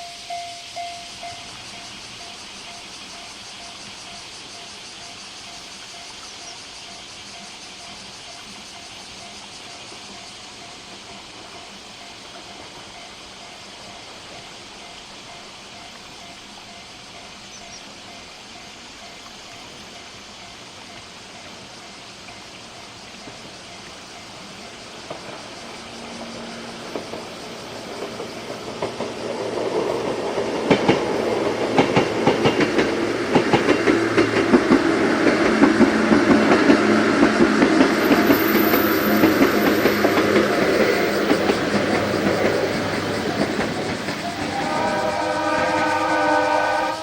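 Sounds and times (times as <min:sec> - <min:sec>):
electric train passing: 0:00.0 - 0:47.0
wheel clacks over rail joints: 0:22.2 - 0:44.9.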